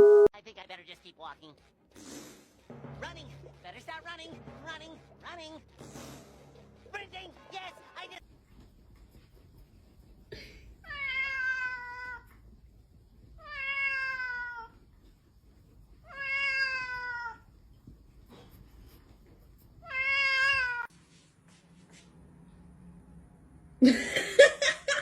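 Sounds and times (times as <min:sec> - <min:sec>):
cat meowing: 0:10.8 - 0:12.3, 0:13.4 - 0:14.8, 0:16.0 - 0:17.5, 0:19.8 - 0:20.9.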